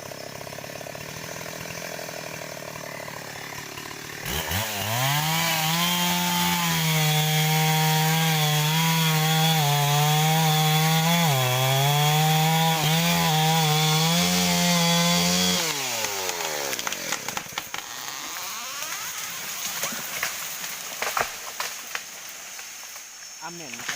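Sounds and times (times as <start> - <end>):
chainsaw cutting wood: 0.0 - 23.9.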